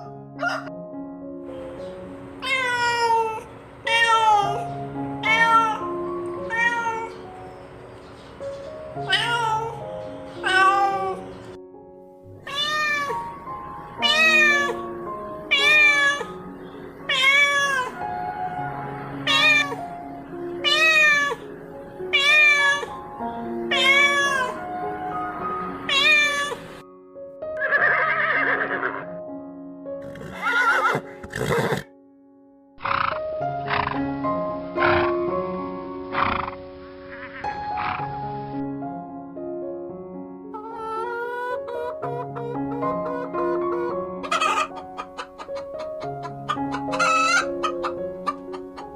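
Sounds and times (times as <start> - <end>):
background music: 0.0 - 48.9
cat meowing: 2.4 - 7.3, 9.0 - 9.8, 10.4 - 11.3, 12.4 - 13.4, 14.0 - 14.9, 15.5 - 18.0, 19.2 - 19.8, 20.6 - 21.5, 22.1 - 23.0, 23.7 - 25.2, 25.9 - 26.7.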